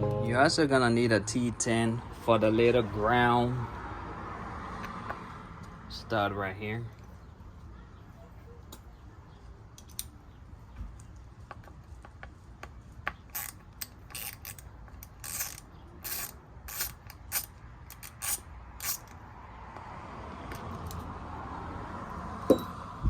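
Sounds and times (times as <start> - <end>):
hand ratchet clicking: 13.3 - 19.2.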